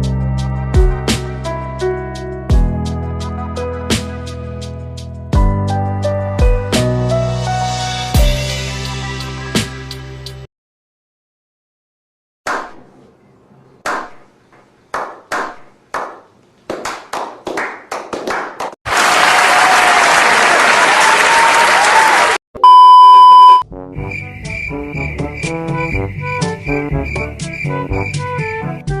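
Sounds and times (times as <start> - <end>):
slow clap speeding up: 14.9 - 22.4
applause and cheering: 17.2 - 22.4
short steady beep: 22.6 - 23.6.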